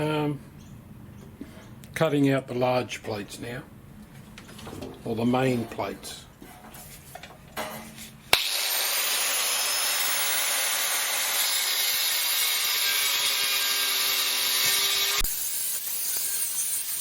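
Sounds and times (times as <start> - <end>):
power tool cutting steel: 8.3 - 17.0.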